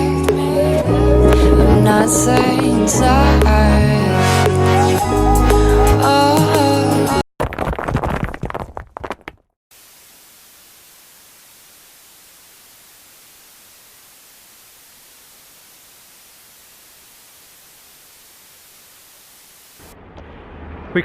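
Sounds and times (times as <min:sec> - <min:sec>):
static hiss: 0:09.7 - 0:19.9
noisy crackle: 0:09.7 - 0:21.0.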